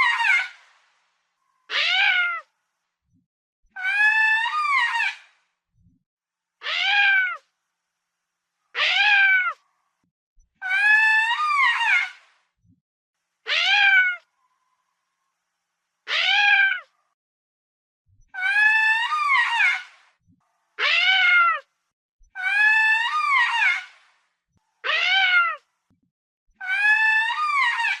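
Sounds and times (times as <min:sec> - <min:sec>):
lemur calling: 0:03.7 - 0:05.3, 0:18.3 - 0:19.9, 0:22.4 - 0:23.9, 0:26.6 - 0:28.0.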